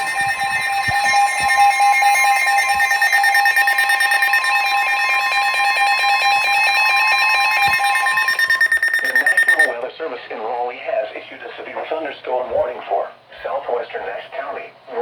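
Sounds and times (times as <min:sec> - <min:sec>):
alarm beeping rapidly: 0:00.0 - 0:09.8
steady attention tone: 0:00.0 - 0:09.8.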